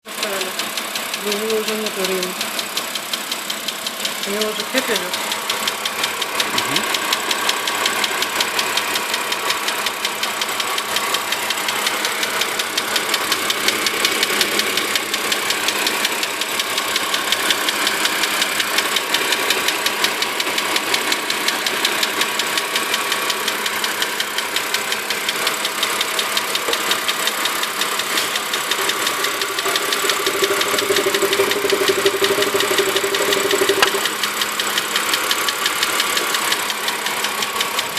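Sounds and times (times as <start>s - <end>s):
car engine running: 0.0s - 37.9s
rapid engine knocking: 0.0s - 37.9s.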